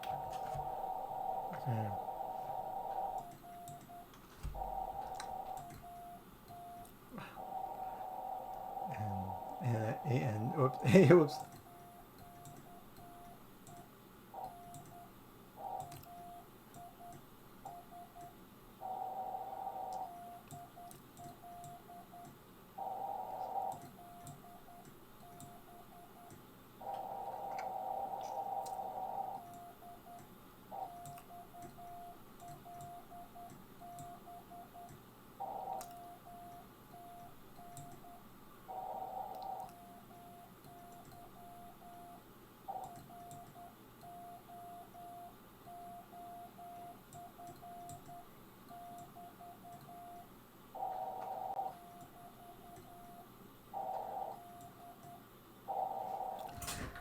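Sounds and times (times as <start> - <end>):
morse code tone: 0.3 - 6.9, 30.8 - 34.9.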